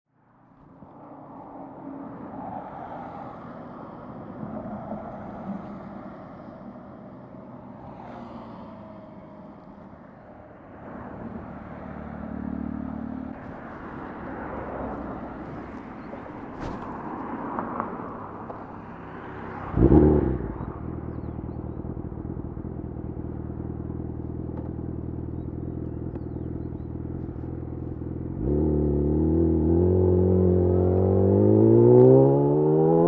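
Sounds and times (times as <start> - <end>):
motorcycle engine at low revs: 14.9 - 17.2, 19.7 - 33.0.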